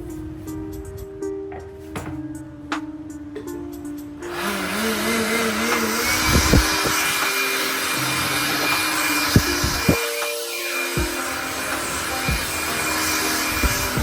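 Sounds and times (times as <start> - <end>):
power tool whirring: 4.2 - 14.0.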